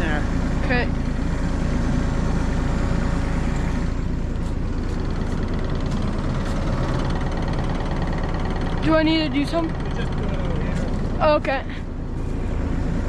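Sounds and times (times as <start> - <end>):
excavator diesel engine idling: 0.0 - 13.0.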